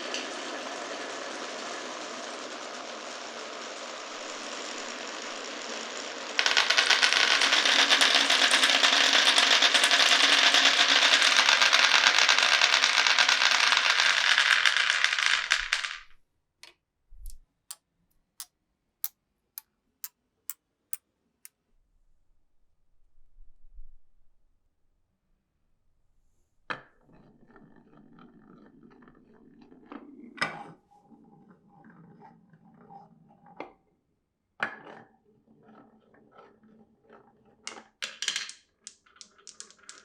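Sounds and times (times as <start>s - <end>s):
marbles rolling on wooden run: 0.0s - 16.2s, 37.7s - 40.0s
marble bouncing on hard surface: 6.4s - 16.2s, 37.7s - 40.0s.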